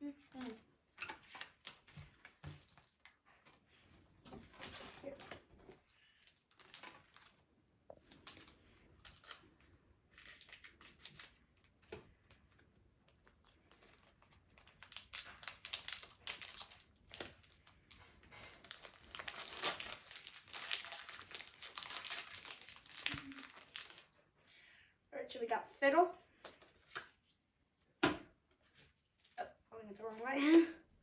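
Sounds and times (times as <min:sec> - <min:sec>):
foil wrapper crinkling and tearing: 0:06.2 - 0:07.4, 0:08.1 - 0:09.5, 0:10.1 - 0:24.2.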